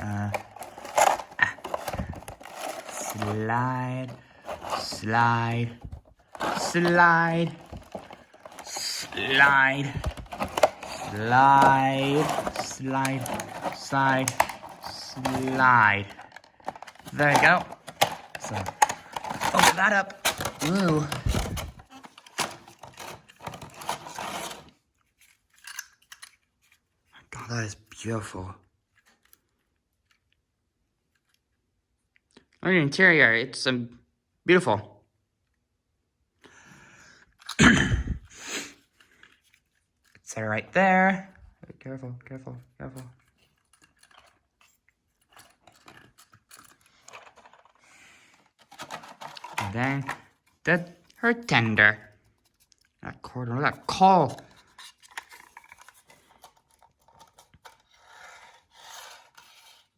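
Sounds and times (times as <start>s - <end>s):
packaging rustling and crinkling: 0.0s - 26.8s, 43.1s - 53.0s, 53.7s - 59.9s.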